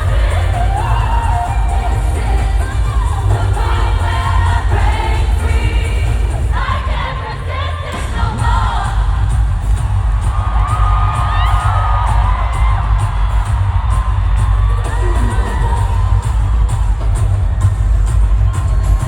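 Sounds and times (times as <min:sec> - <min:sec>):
person singing: 0:00.0 - 0:09.3
crowd cheering and whooping: 0:00.0 - 0:19.0
loud amplified pop music: 0:00.0 - 0:19.0.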